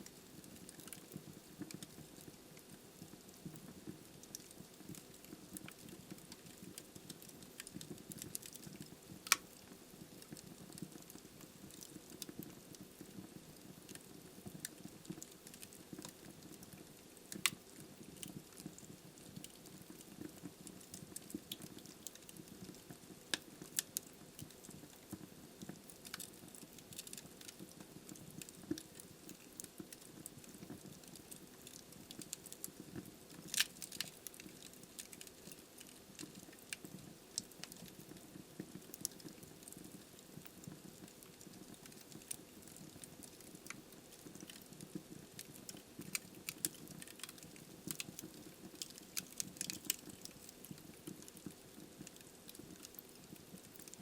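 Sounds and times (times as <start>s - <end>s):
low burning noise: 0.0s - 54.0s
logs crackling: 33.4s - 35.5s, 45.4s - 53.9s.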